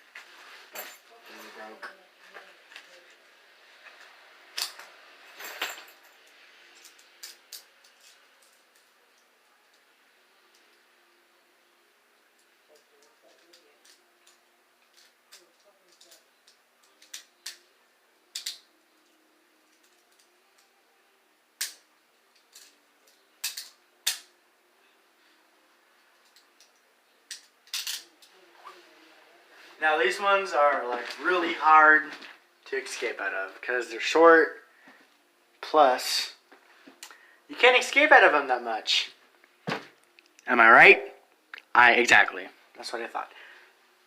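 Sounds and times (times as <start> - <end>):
handcuffs clicking and clinking: 4.6 - 9.3, 12.4 - 18.8, 19.7 - 20.8, 21.6 - 24.3, 26.2 - 28.3.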